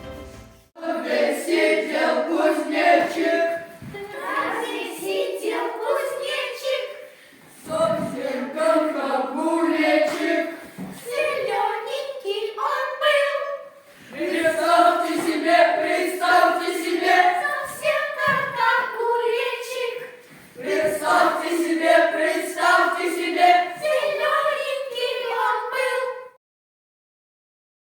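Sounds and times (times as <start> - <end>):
group of voices singing: 0.8 - 7.0, 7.6 - 11.7, 14.0 - 26.4.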